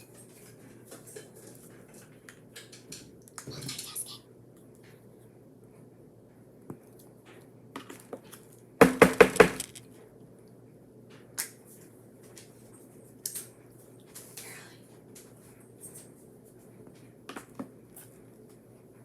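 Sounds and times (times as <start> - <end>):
sharp knocks: 8.8 - 9.8.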